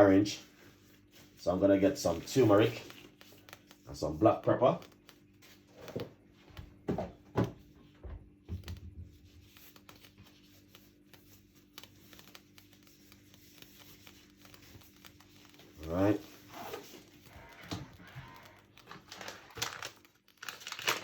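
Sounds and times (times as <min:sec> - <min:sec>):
kitchen items knocking and rustling: 0:05.8 - 0:09.1.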